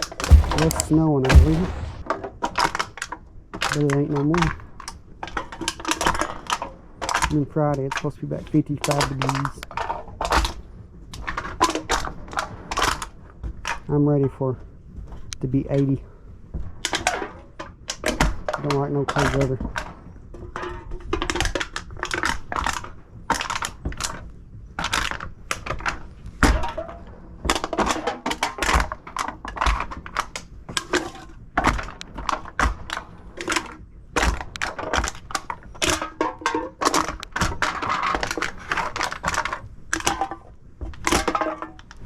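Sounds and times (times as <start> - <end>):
heavy thuds: 0.0 - 2.2.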